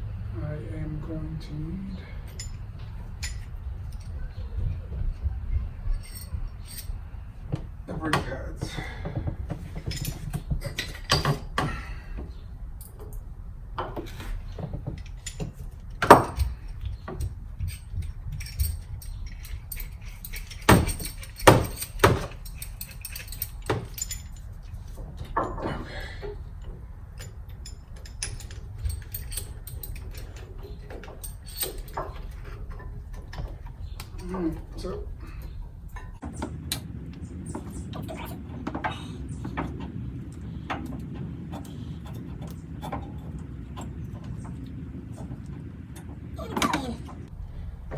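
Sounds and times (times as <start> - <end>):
low rumble: 0.0 - 47.9
metallic clinks of hand tools: 2.0 - 4.4, 13.8 - 47.3.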